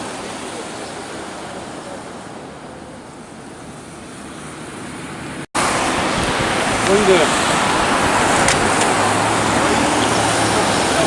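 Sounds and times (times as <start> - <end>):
floodwater pouring over a dam: 0.0 - 2.8, 5.6 - 11.0.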